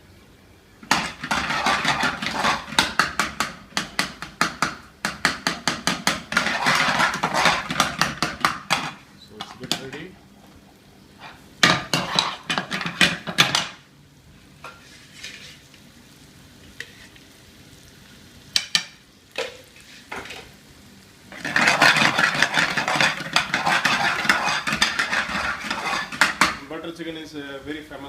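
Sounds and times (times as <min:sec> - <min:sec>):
onion frying: 0:00.7 - 0:26.8
metal spoon scraping in a pan: 0:00.9 - 0:04.0, 0:06.0 - 0:09.8, 0:11.2 - 0:13.7, 0:14.6 - 0:15.7, 0:16.8 - 0:17.2, 0:21.3 - 0:26.6.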